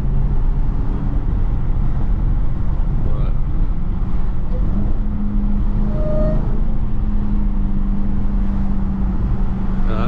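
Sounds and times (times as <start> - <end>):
car engine droning at cruise: 2.8 - 10.0.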